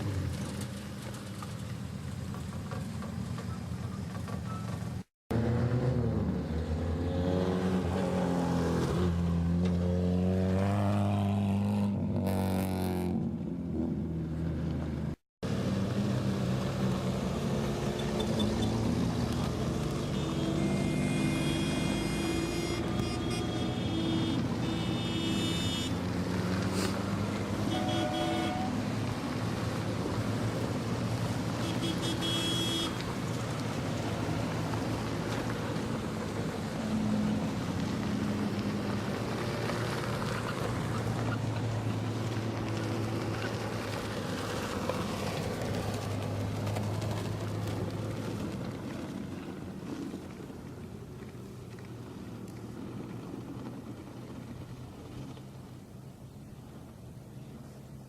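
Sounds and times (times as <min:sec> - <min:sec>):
car engines revving: 0:00.0 - 0:50.7
steady engine hum: 0:14.2 - 0:58.0.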